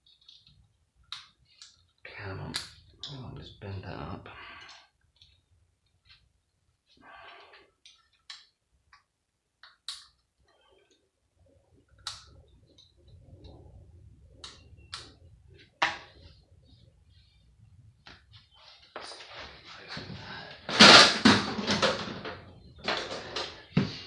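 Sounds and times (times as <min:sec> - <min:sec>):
plastic parts clicking and snapping: 0:09.6 - 0:10.3.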